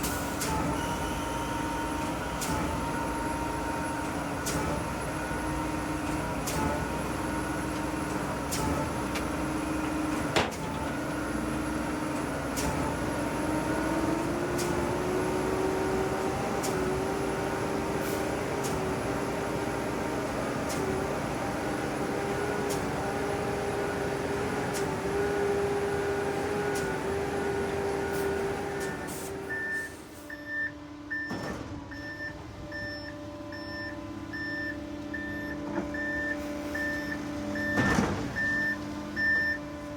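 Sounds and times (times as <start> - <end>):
truck reversing beeper: 0.0 - 5.7, 28.0 - 39.9.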